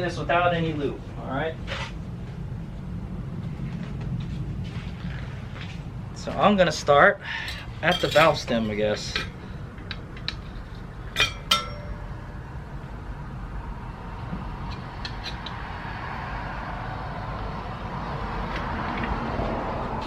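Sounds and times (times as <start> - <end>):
steady low rumble: 0.0 - 20.0
metal tire levers clinking: 7.4 - 12.4.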